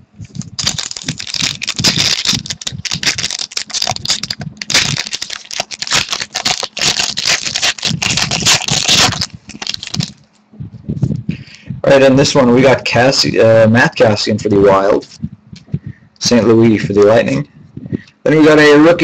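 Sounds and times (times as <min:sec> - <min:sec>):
wrapper crinkling and tearing: 0:00.3 - 0:10.2.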